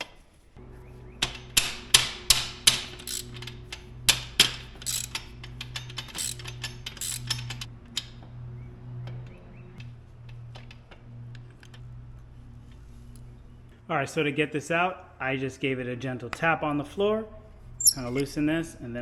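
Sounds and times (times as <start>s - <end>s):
sharp metallic clicks and knocks: 1.2s - 8.3s.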